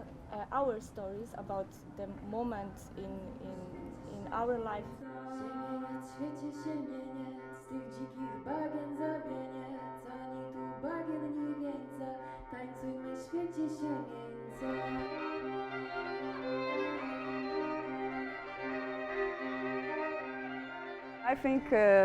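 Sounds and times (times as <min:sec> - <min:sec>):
sliding folk melody: 0:05.0 - 0:21.9.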